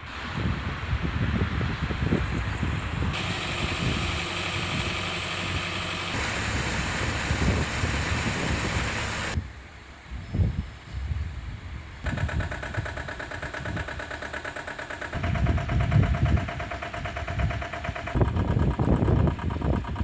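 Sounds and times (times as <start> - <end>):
wind on the microphone: 0.0 - 5.0, 6.2 - 9.5, 10.1 - 12.9, 15.2 - 20.0
vehicle engines: 0.0 - 10.1
street noise: 0.0 - 10.2.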